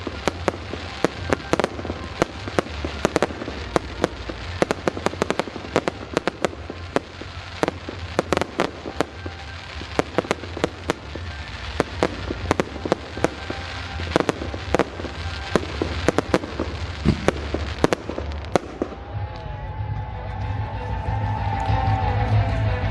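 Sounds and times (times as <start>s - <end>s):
fireworks bangs and crackling: 0.0s - 19.6s.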